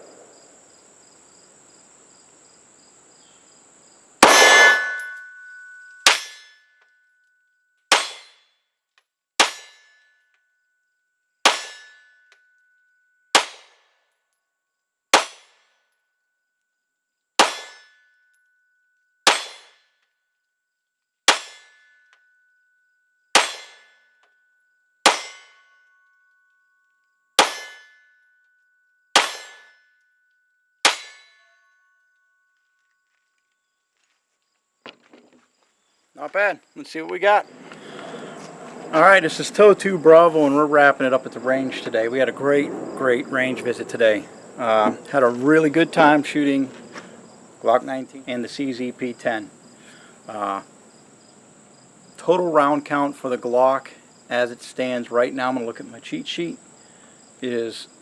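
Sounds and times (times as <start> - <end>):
pistol shots: 4.2 - 5.2
steel plate ringing: 4.2 - 7.2, 9.4 - 10.3, 11.5 - 13.7, 17.4 - 18.4, 21.3 - 26.7, 27.4 - 32.4.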